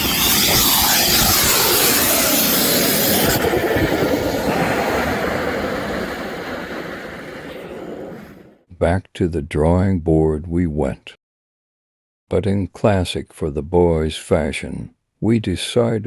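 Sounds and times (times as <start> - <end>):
high rushing hiss: 0.0 - 8.4
furnace roaring: 0.0 - 8.5.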